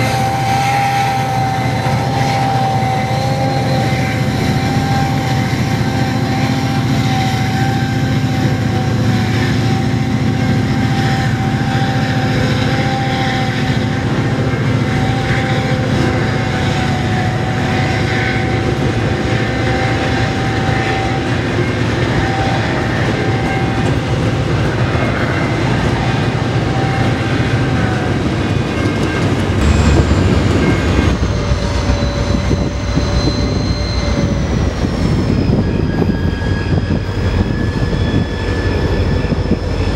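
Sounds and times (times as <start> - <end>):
locomotive engines droning: 0.0 - 39.9
high whine: 26.3 - 39.9
steady tone: 29.5 - 37.5.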